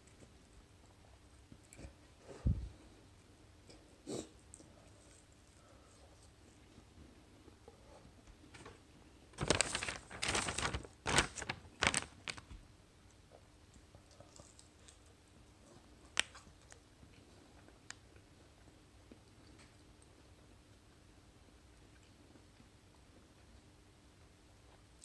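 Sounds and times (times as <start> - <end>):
food packaging crinkling: 9.4 - 12.6.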